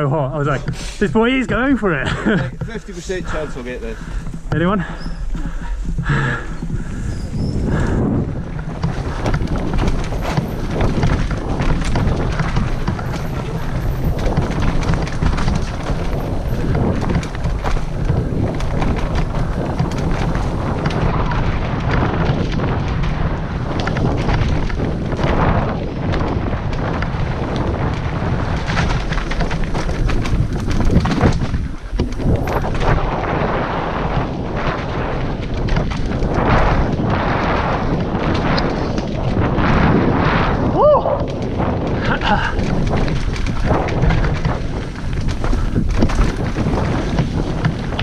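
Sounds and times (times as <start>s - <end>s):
bike rattling: 0.0s - 48.0s
tyres rumbling over dirt: 0.0s - 48.0s
wind buffeting microphone: 0.0s - 48.0s.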